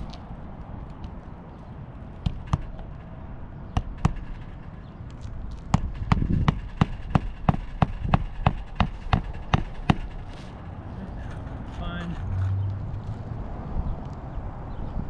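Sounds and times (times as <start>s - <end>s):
hammer driving nails into shingle: 2.2s - 3.0s, 3.7s - 4.7s, 5.5s - 10.4s.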